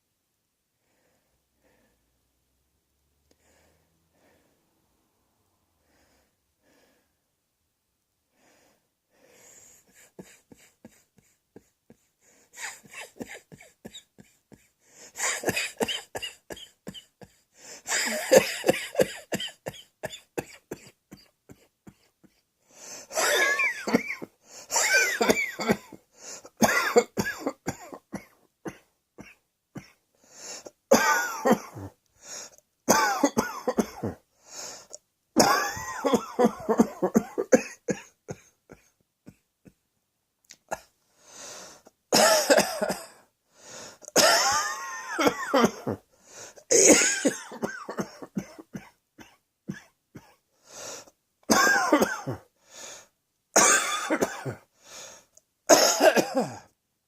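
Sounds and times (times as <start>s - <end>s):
person coughing: 12.6s - 22.4s, 23.0s - 30.0s, 30.6s - 32.0s, 32.9s - 34.2s, 35.4s - 39.8s, 42.1s - 43.3s, 44.1s - 46.0s, 46.6s - 50.4s, 51.4s - 52.5s, 53.6s - 54.7s, 55.7s - 56.7s.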